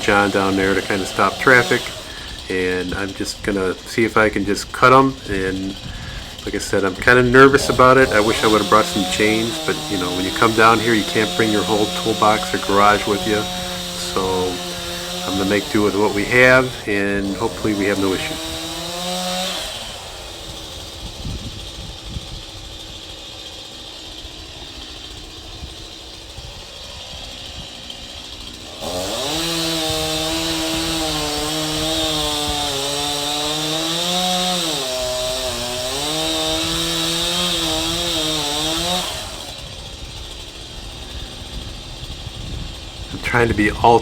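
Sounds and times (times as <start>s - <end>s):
chainsaw cutting wood: 0.0s - 44.0s.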